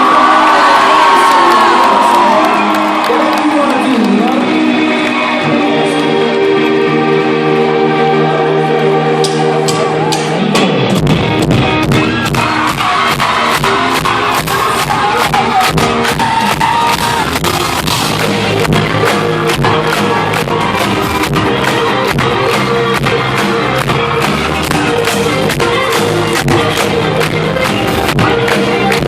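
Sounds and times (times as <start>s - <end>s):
band music: 0.0s - 29.0s
bass and drums: 9.2s - 29.0s.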